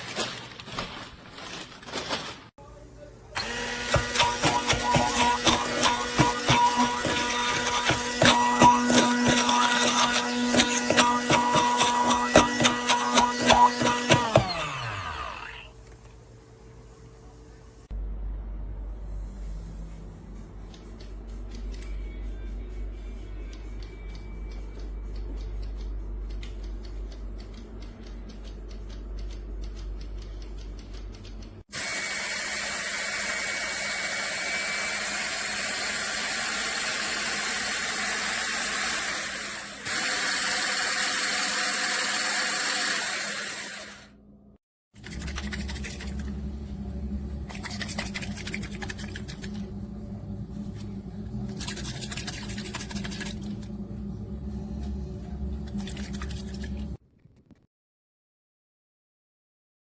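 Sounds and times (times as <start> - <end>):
small electric motor running: 3.4 - 15.7, 31.7 - 44.0.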